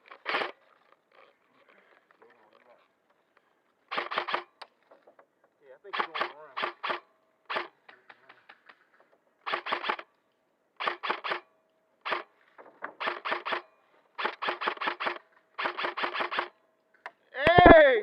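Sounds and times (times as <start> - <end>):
airsoft gun firing bursts: 3.9 - 4.6, 5.9 - 8.8, 9.4 - 10.1, 10.8 - 12.4, 13.0 - 16.6.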